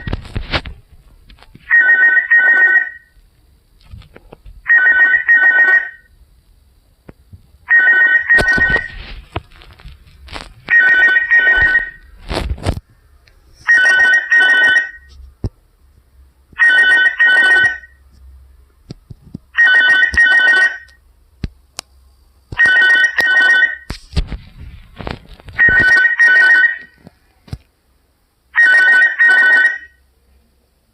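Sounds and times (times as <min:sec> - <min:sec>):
phone ringtone double ring: 0:01.7 - 0:03.1, 0:04.7 - 0:06.1, 0:07.7 - 0:08.9, 0:10.7 - 0:12.0, 0:13.7 - 0:15.1, 0:16.6 - 0:18.0, 0:19.6 - 0:20.9, 0:22.6 - 0:23.9, 0:25.6 - 0:26.9, 0:28.6 - 0:30.0.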